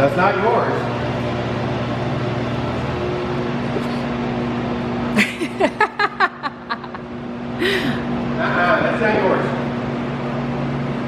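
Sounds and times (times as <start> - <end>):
steady hum: 0.0 - 11.0
man laughing: 5.2 - 8.0.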